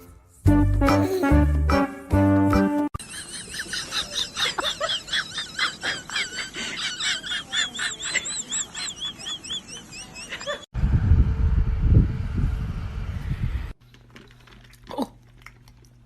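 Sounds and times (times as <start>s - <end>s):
high-pitched bird chirping: 7.9s - 10.6s.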